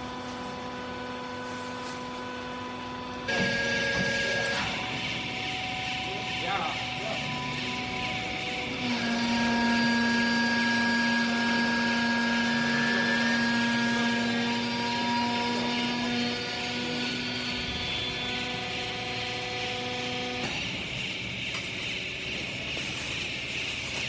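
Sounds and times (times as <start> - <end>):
hydraulic power unit humming: 0.0 - 24.0.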